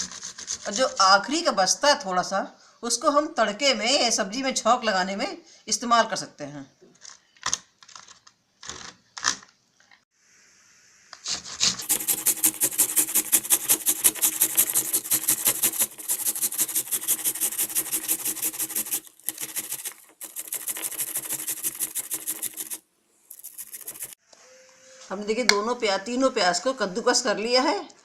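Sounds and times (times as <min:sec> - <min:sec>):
onion rasping on hand grater: 0:00.0 - 0:01.2, 0:11.2 - 0:24.2.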